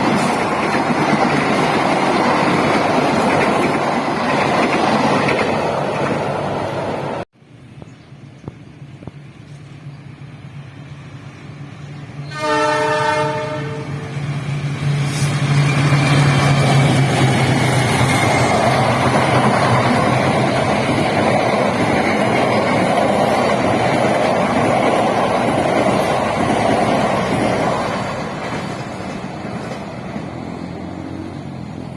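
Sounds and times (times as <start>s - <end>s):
train engine drone: 0.0s - 31.9s
wheels on rail: 0.0s - 31.9s
train horn blast: 12.2s - 14.2s.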